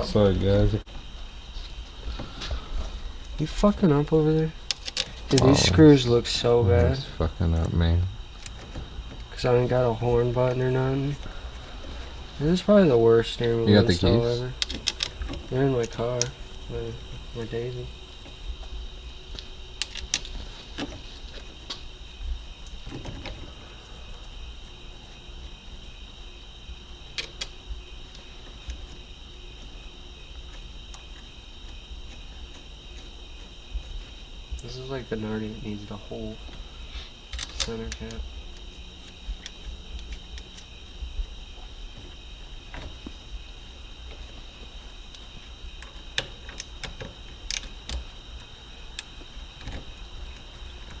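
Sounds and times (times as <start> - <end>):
crickets trilling: 0.0 - 51.0
metallic clicks of hand tools: 4.7 - 5.4, 46.2 - 48.1
sharp clicks: 14.6 - 16.4, 19.3 - 20.9, 37.3 - 38.2, 45.8 - 49.8.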